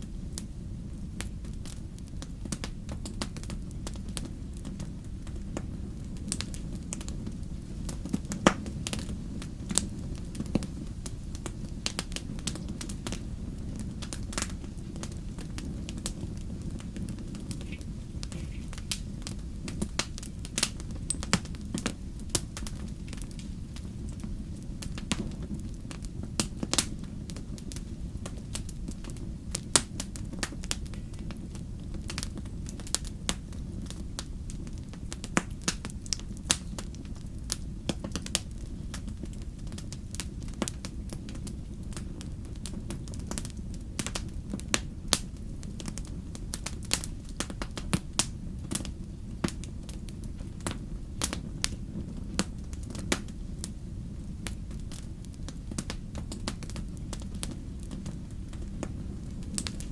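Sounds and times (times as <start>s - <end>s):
fire crackles and pops: 0.0s - 59.9s
wood fire rumbling: 0.0s - 59.9s.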